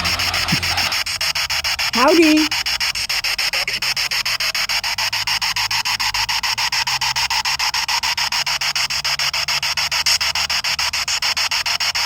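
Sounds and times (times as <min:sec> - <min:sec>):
pulsing radio static: 0:00.0 - 0:05.0.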